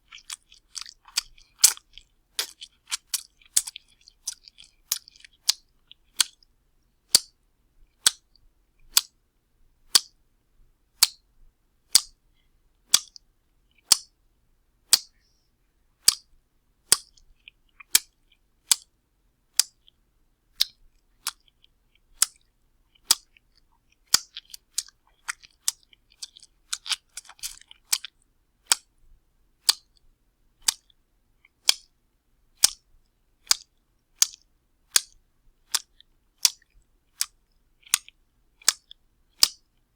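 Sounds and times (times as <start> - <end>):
wet smacking and crackling: 0.0 - 6.4, 23.0 - 28.9, 35.0 - 39.6.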